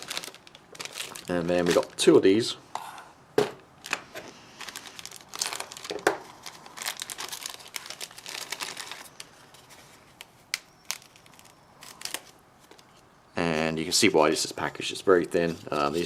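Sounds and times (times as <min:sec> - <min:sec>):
plastic packaging crinkling: 0:00.0 - 0:02.2, 0:03.8 - 0:13.0.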